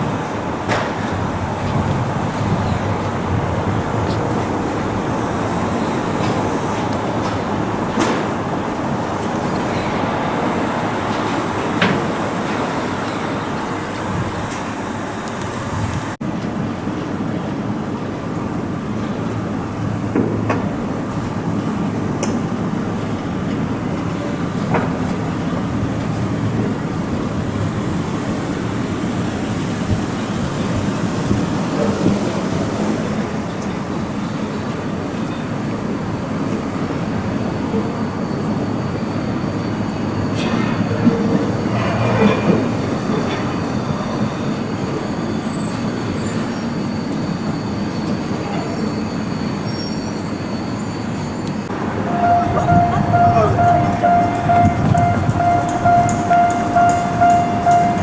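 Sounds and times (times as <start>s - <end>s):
subway train running: 0.0s - 58.0s
faint high squeals: 37.8s - 58.0s.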